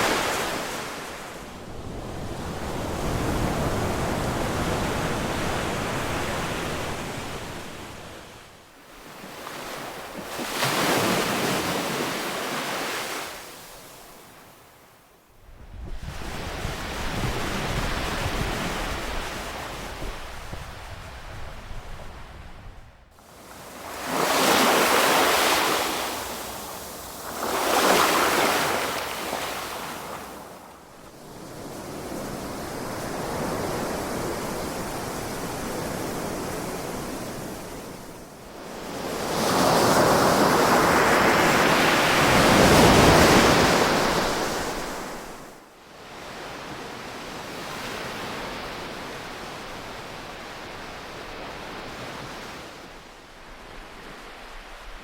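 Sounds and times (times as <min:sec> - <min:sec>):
waves breaking: 0:00.0 - 0:01.5, 0:09.0 - 0:14.0, 0:23.2 - 0:30.7.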